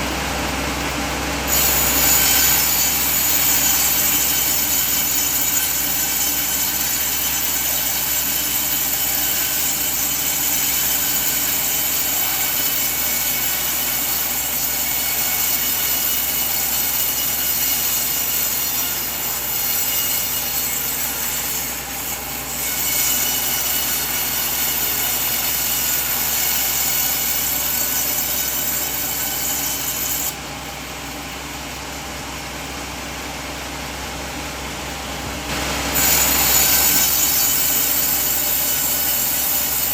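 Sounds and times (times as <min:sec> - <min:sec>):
low motor hum: 0:00.0 - 0:06.5, 0:29.8 - 0:37.4
band saw cutting log: 0:00.0 - 0:39.9.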